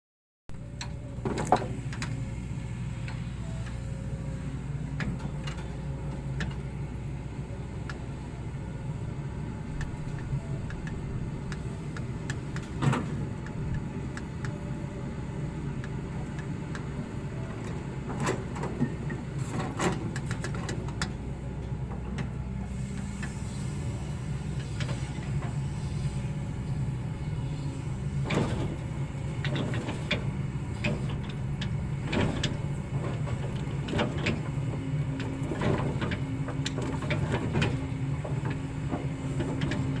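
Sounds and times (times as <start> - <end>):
excavator diesel engine running: 0.5 - 40.0.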